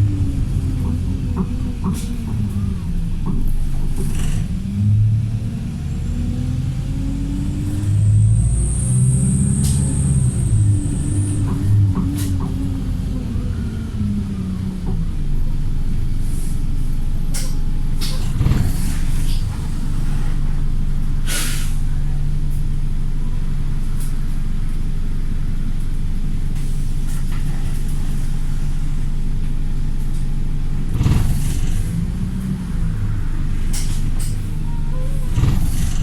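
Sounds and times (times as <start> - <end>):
bus diesel engine running: 0.0 - 36.0
air brake hisses: 9.0 - 11.5, 21.2 - 21.9.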